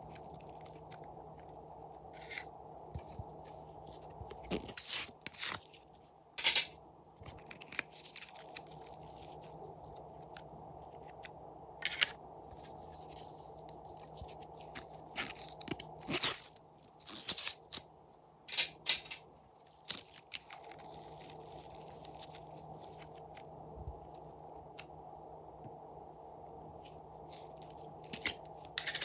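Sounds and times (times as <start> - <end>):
slime crackling and crunching: 19.6 - 23.5.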